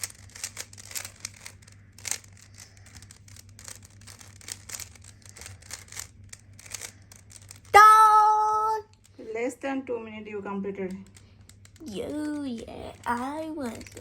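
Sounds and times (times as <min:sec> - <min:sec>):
puzzle cube plastic clicks: 0:00.0 - 0:07.8, 0:10.9 - 0:12.7
faint steady hum: 0:00.0 - 0:14.0.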